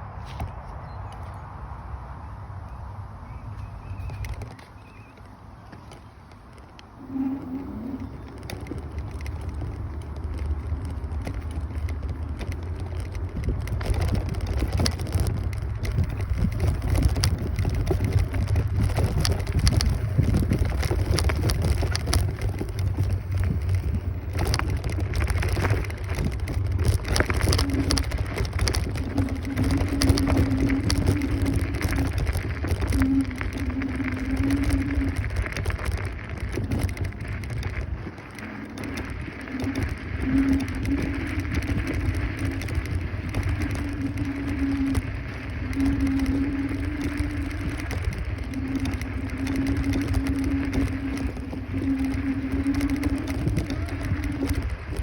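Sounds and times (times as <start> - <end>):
scooter road rumble: 0.0 - 55.0
wind buffeting microphone: 0.0 - 55.0
scattered crackles: 3.4 - 55.0
steady hum: 17.0 - 55.0.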